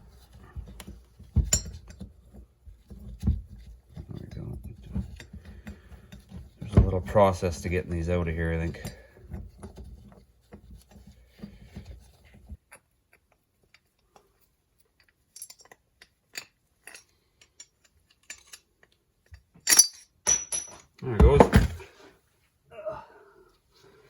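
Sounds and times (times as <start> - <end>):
metal parts clinking and tapping: 0.8 - 6.6, 14.8 - 21.6
sharp ringing metallic clinks: 19.7 - 20.8.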